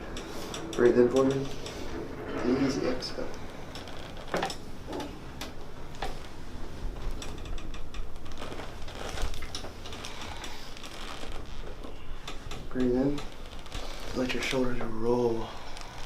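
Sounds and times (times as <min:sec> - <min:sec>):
treatment table clicks and rattles: 0:00.0 - 0:16.0.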